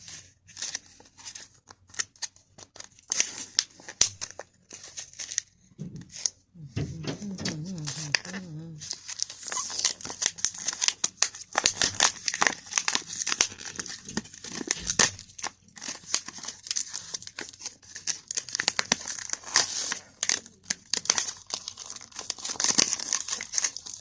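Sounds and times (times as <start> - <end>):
food packaging crinkling and tearing: 0.0 - 6.4, 7.0 - 24.0.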